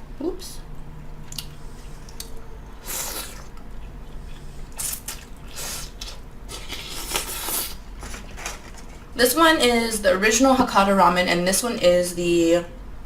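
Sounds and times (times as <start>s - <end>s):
person slurping noodles: 2.8s - 3.5s.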